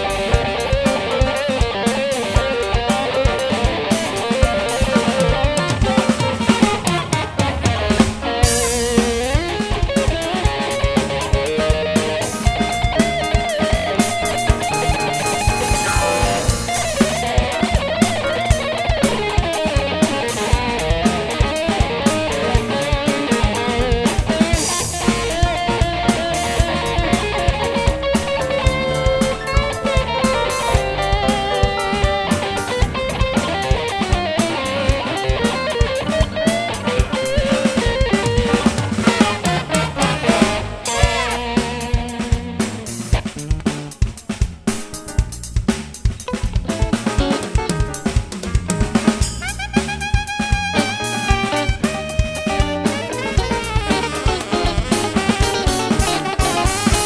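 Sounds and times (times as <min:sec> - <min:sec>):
drum kit beat: 0:00.0 - 0:57.0
electric guitar melody: 0:00.0 - 0:57.0.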